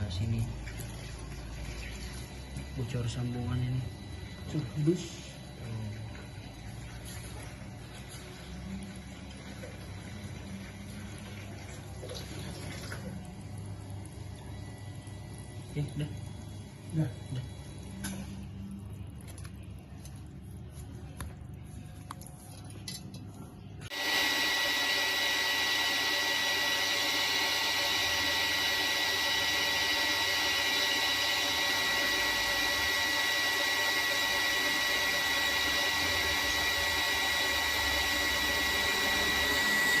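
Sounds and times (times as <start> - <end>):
power tool motor whining: 23.9 - 40.0.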